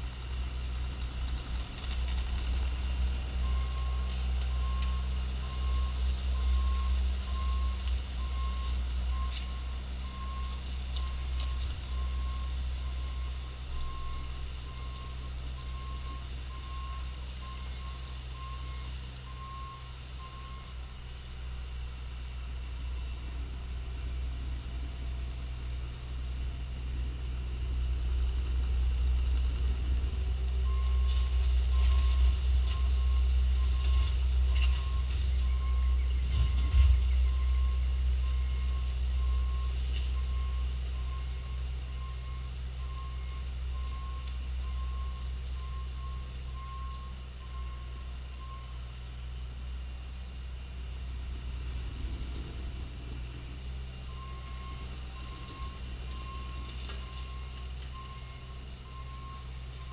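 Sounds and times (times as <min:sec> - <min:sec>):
diesel engine running: 0:00.0 - 0:59.9
backup alarm beeping: 0:03.4 - 0:20.8, 0:30.6 - 0:48.7, 0:54.1 - 0:59.9.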